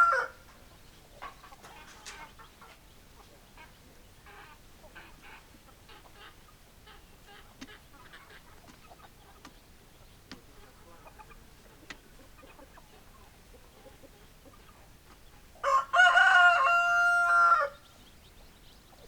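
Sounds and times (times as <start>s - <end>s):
rooster crowing: 0.0s - 0.4s, 15.6s - 17.8s
hens clucking faintly: 0.0s - 19.0s.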